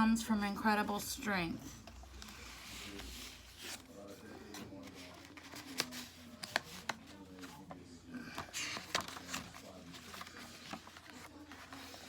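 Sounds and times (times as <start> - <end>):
paper pages rustling: 1.6 - 12.0.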